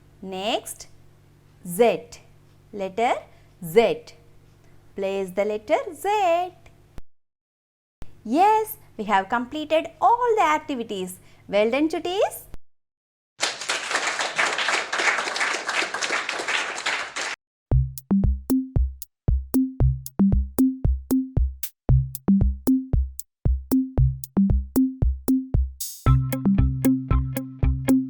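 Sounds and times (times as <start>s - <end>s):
applause: 13.4s - 17.4s
electronic kick drum and bass beat: 17.7s - 28.0s
synth music: 26.1s - 28.0s.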